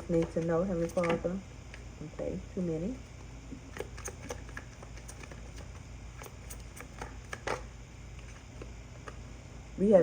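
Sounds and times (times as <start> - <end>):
cards being shuffled: 0.0 - 1.9, 3.2 - 9.3.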